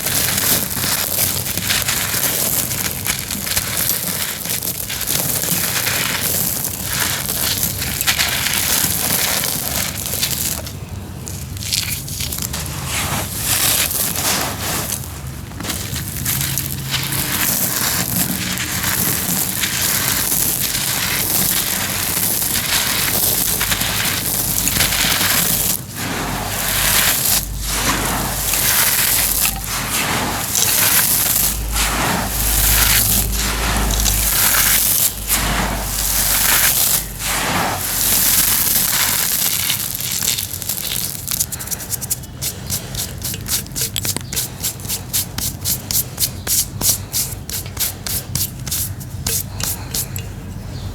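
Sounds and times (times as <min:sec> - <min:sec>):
cement pieces crunching: 0:00.0 - 0:50.4
short scrapes: 0:12.5 - 0:50.2.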